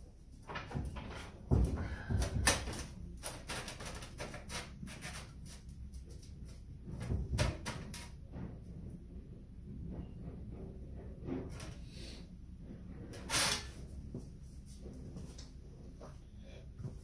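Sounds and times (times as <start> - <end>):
sheet metal knocks and clicks: 6.8 - 9.0.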